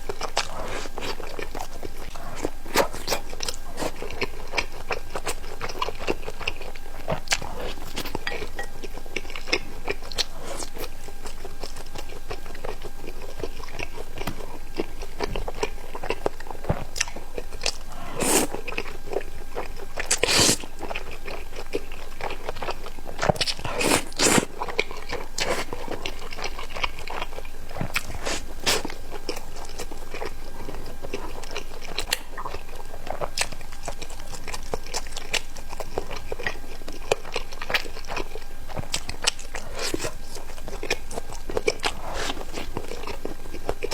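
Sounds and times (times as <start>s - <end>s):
person chewing crunchy food: 0.0s - 43.9s.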